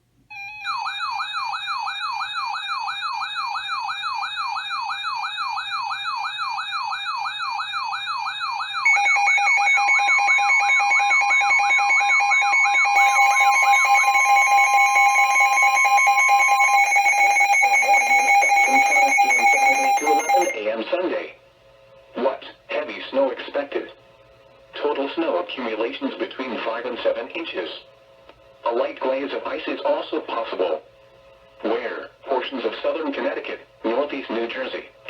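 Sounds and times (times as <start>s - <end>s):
steady alarm tone: 0.3s - 20.7s
warbling siren-like tone: 0.4s - 20.6s
person speaking: 17.5s - 20.7s.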